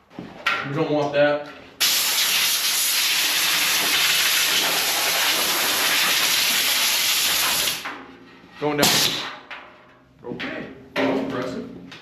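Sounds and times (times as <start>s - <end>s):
loud steady hiss: 1.8s - 7.8s.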